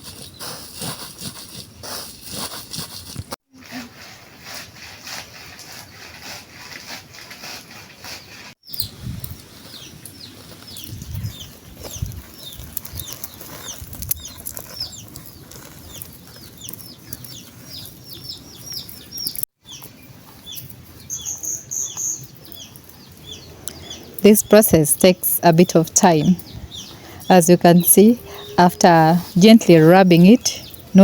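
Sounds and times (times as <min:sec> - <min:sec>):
rustling of groundnuts being rubbed: 0:00.0 - 0:08.6, 0:27.8 - 0:31.0
birds chirping: 0:08.6 - 0:31.0.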